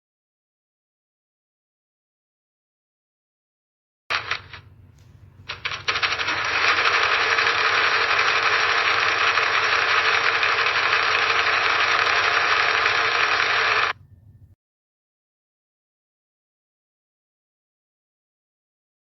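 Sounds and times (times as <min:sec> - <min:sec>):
sewing machine stitching: 0:04.1 - 0:04.6, 0:05.5 - 0:14.0.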